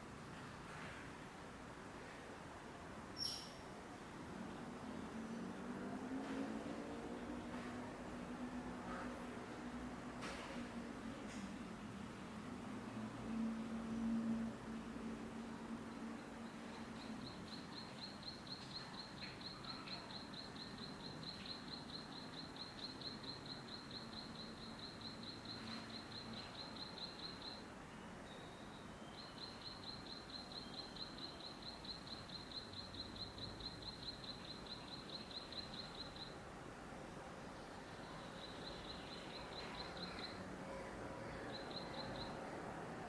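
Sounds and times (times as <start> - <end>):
outdoor background hiss: 0.0 - 43.0
small animal chirping trill: 3.2 - 3.6.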